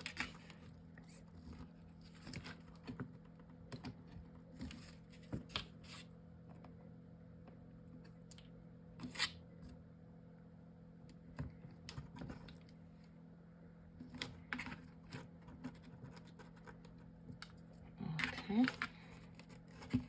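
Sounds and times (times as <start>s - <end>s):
paper and chipboard rustling: 0.0s - 6.1s, 14.0s - 20.0s
steady low hum: 0.0s - 20.0s.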